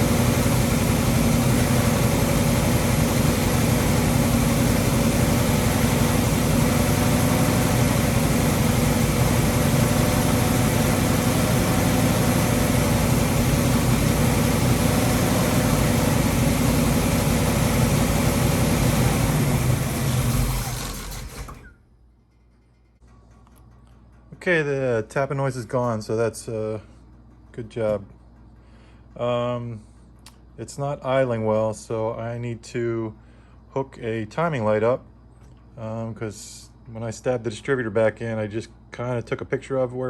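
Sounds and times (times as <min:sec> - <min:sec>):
engine running roughly: 0:00.0 - 0:22.9.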